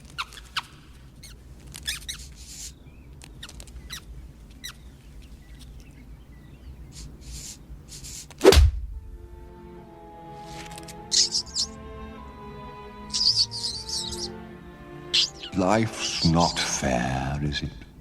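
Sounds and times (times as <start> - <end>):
mouse squeaks: 0.0 - 4.8, 11.1 - 11.8, 13.1 - 14.3, 15.1 - 16.6
light pattering steps: 0.0 - 6.3, 10.4 - 11.7.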